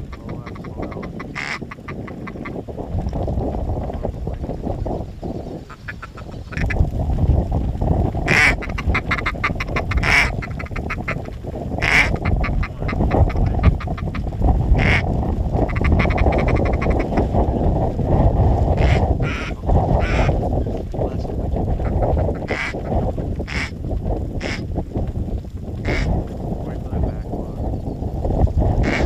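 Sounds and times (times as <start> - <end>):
ducks quacking: 0.0 - 2.6, 5.6 - 6.8, 8.2 - 17.7, 18.7 - 23.8, 24.4 - 24.7, 25.8 - 27.2, 28.8 - 29.0.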